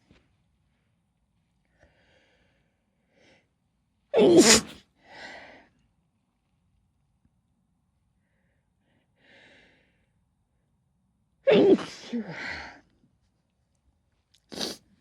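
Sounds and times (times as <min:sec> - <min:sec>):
person sneezing: 0:04.2 - 0:04.8, 0:11.5 - 0:12.6.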